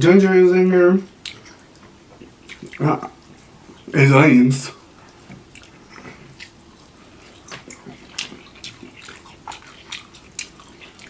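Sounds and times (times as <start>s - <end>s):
wet chewing: 1.1s - 4.0s, 4.8s - 11.0s
mouth clicks and smacks: 1.2s - 3.9s, 5.3s - 6.6s, 7.2s - 11.0s.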